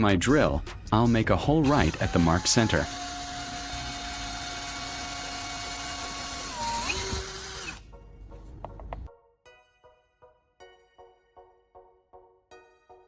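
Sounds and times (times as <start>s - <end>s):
electric drill boring into wood: 1.6s - 7.8s.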